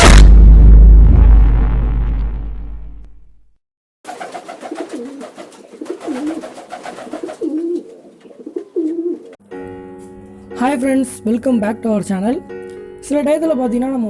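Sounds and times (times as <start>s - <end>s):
deep rumbling intro sound: 0.0s - 3.5s
pigeon cooing: 4.1s - 9.4s.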